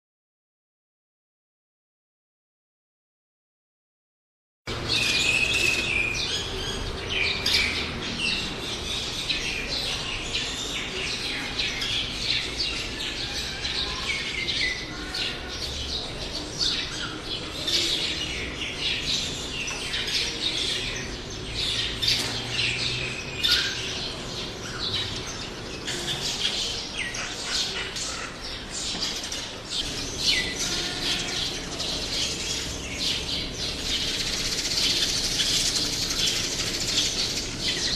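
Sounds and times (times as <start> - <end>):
small birds chirping: 4.7 - 37.9.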